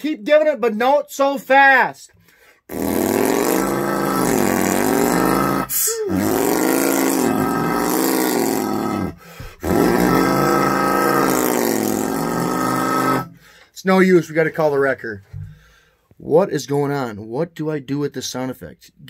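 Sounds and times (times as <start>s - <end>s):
man droning into water jug: 2.7s - 13.6s.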